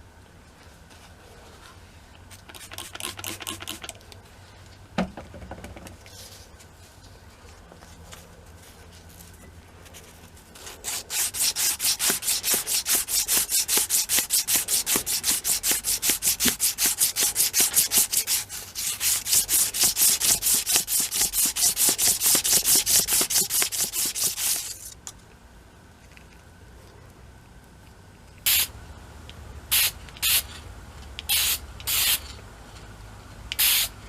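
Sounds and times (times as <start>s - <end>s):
hand sanding wood: 2.5s - 3.8s, 10.6s - 24.9s.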